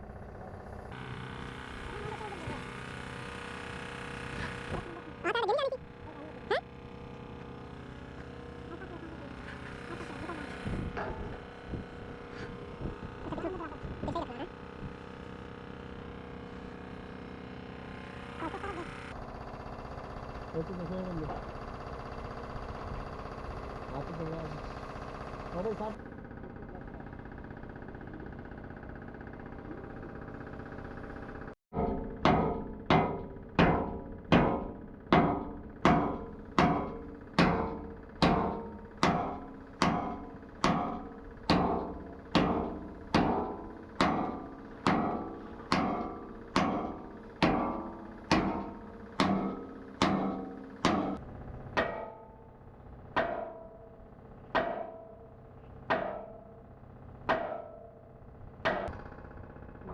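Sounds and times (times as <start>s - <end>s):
hammer striking steel: 31.8s - 51.2s, 51.8s - 52.4s, 53.1s - 56.6s, 57.3s - 58.0s, 58.6s - 59.0s.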